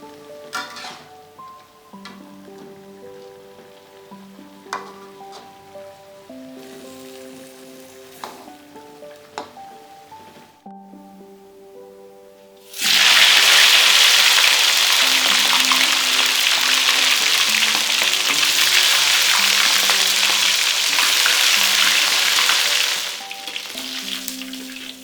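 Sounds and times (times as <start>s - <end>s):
food sizzling in hot oil: 0.0s - 1.5s, 2.4s - 10.0s, 12.6s - 25.0s.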